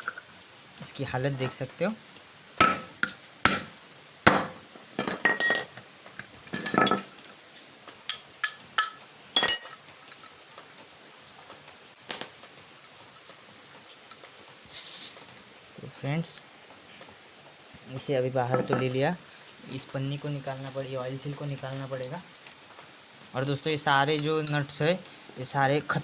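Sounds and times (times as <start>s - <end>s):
metal parts clinking: 1.3s - 1.8s, 2.6s - 7.4s, 8.1s - 9.9s.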